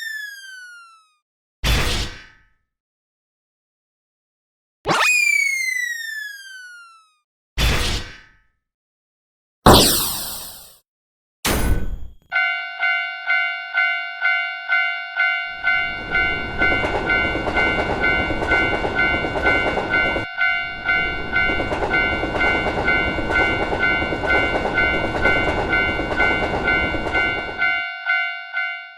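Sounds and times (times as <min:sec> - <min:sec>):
railroad crossing bell ringing: 0:12.3 - 0:28.9
train rumbling past: 0:15.4 - 0:28.2.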